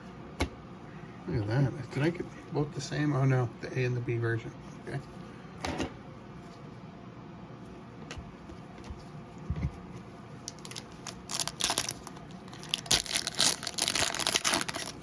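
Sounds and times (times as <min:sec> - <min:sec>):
foil wrapper tearing and crinkling: 0:10.5 - 0:15.0.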